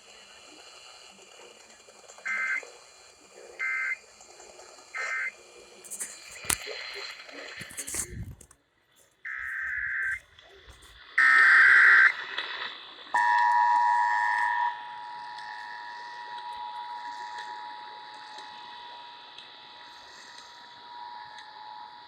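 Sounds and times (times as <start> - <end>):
buzzy digital header bursts: 5.0 - 6.4
two-tone attention signal: 13.2 - 18.0.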